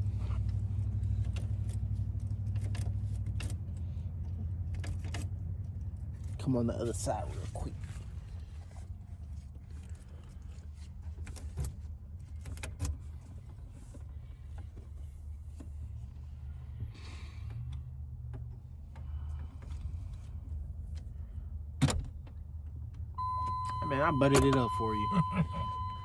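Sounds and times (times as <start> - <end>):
steady low hum: 23.1 - 26.0.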